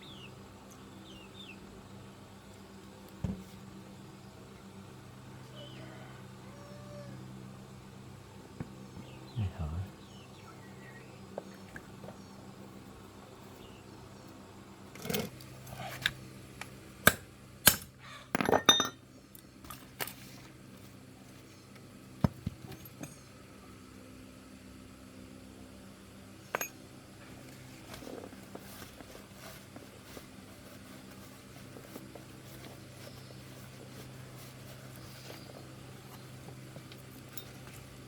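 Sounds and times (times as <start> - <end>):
faint low hum: 0.0 - 38.0
metal tools clinking: 18.4 - 19.0, 26.5 - 26.8, 36.8 - 38.0.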